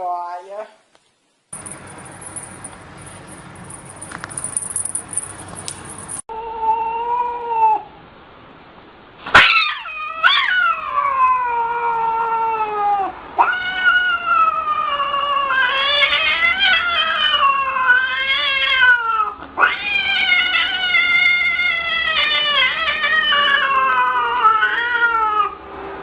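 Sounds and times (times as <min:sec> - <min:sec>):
cat yowling: 0:06.3 - 0:07.9, 0:09.3 - 0:25.6.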